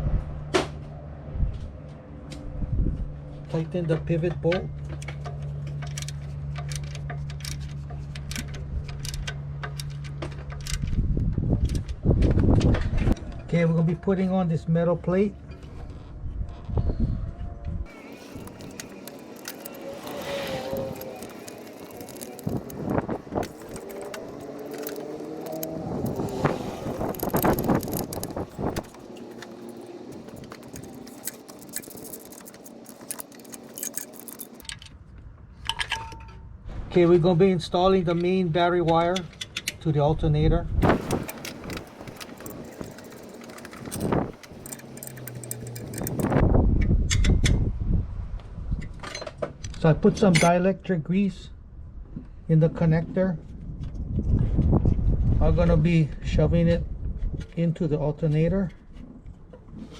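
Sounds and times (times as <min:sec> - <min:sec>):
metal hand tools clinking: 0:17.9 - 0:34.8, 0:40.9 - 0:46.4
ratchet wrench clicking: 0:17.9 - 0:34.8, 0:41.3 - 0:46.4.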